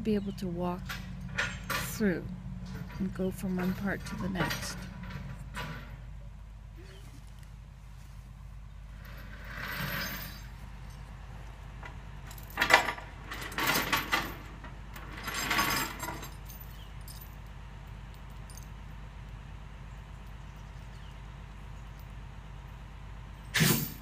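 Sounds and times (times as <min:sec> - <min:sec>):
low engine hum: 0:00.0 - 0:09.5, 0:10.1 - 0:15.3, 0:16.0 - 0:24.0
metal chains clanking: 0:00.8 - 0:06.0, 0:09.0 - 0:11.1, 0:12.2 - 0:18.8, 0:23.4 - 0:24.0.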